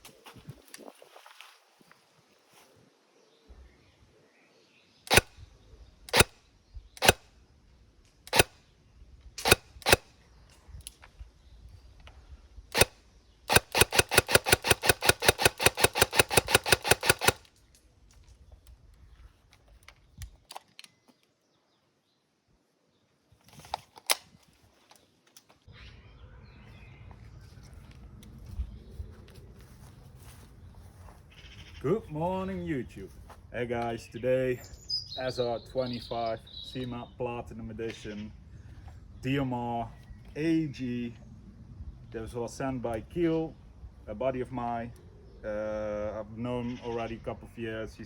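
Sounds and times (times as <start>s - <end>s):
airsoft gun full-auto burst: 5.1s - 5.4s, 6.1s - 6.4s, 7.0s - 7.3s, 8.3s - 8.6s, 9.4s - 10.1s, 12.7s - 17.5s
airsoft gun single shots: 5.1s - 5.4s, 6.1s - 6.4s, 7.0s - 7.3s, 8.3s - 8.6s, 9.4s - 10.1s, 12.7s - 17.4s.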